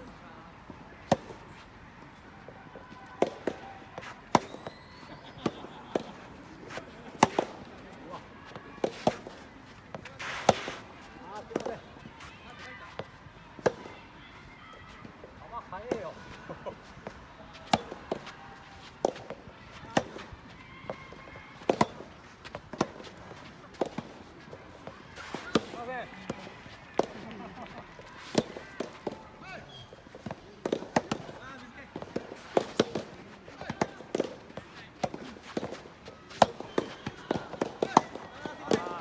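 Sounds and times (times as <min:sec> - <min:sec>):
racket hitting ball: 0:06.7 - 0:07.7, 0:17.7 - 0:20.3, 0:21.6 - 0:27.3, 0:28.2 - 0:29.2, 0:30.1 - 0:31.4, 0:32.0 - 0:38.9
rackets striking ball: 0:30.1 - 0:39.0.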